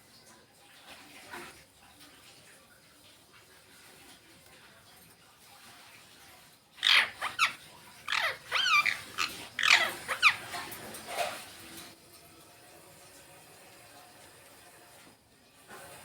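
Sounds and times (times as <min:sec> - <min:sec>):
parakeets squawking: 0:06.8 - 0:10.9.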